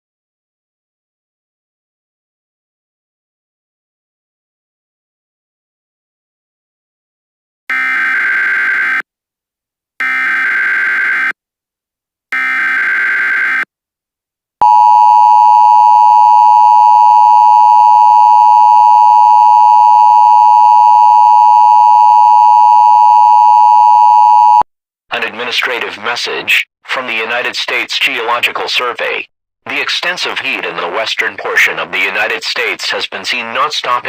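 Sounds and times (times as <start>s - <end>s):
long steady alert tone: 14.6s - 24.6s.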